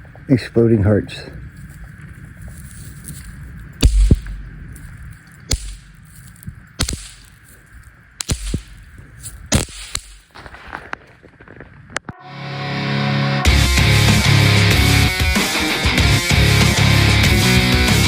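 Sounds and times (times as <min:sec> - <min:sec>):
firework shots and bursts: 0:03.8 - 0:04.6, 0:05.5 - 0:06.0, 0:06.8 - 0:07.4, 0:08.2 - 0:08.9, 0:09.5 - 0:10.4.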